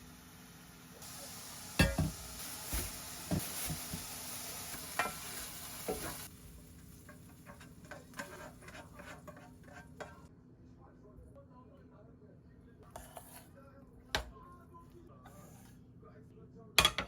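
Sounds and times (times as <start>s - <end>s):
food sizzling in a frying pan: 0.0s - 10.3s
utensil scraping pan: 4.9s - 10.3s, 12.9s - 13.5s, 15.3s - 15.8s.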